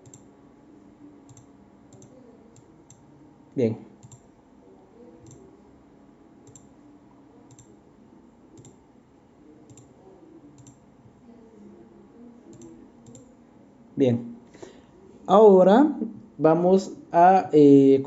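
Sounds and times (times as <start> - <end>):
faint computer mouse clicks: 1.3 - 3.0, 5.2 - 5.4, 6.5 - 6.7, 7.5 - 7.7, 8.6 - 8.8, 9.7 - 9.9, 10.6 - 10.8, 12.5 - 13.3.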